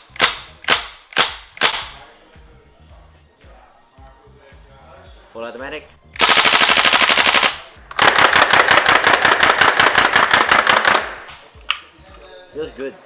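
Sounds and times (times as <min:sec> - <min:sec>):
airsoft rifle firing full auto: 0:00.0 - 0:02.0, 0:06.2 - 0:11.3.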